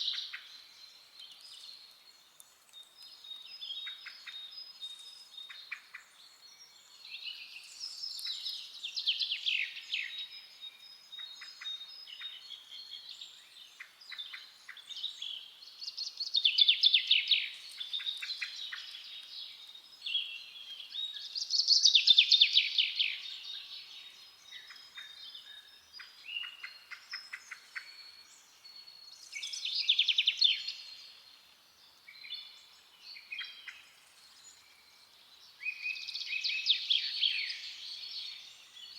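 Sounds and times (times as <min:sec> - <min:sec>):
soft bird chirps: 0:00.0 - 0:38.9.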